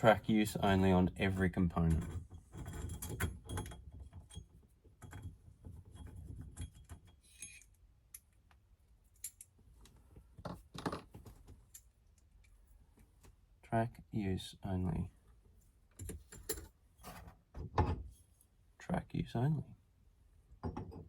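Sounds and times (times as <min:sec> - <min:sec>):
small metal parts clicking and jingling: 0:01.9 - 0:05.3, 0:05.9 - 0:08.4, 0:09.1 - 0:09.6.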